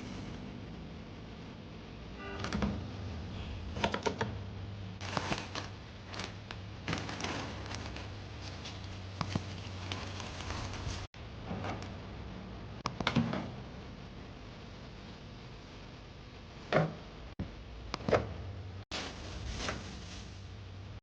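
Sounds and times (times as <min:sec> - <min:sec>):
low steady hum: 0:00.0 - 0:21.0
groceries clicking and knocking: 0:03.6 - 0:12.0
packaging rustling: 0:05.0 - 0:11.1.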